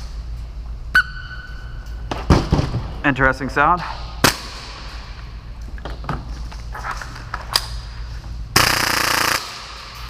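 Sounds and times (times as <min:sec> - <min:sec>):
airsoft pistol rapid burst: 0:08.6 - 0:09.8.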